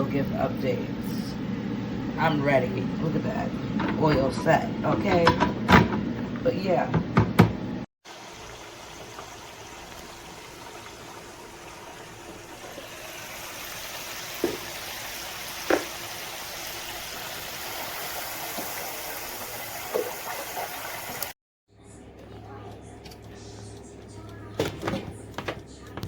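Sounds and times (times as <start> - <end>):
hot oil sizzling in fryer: 8.1 - 21.4
oil popping and crackling: 8.1 - 21.4.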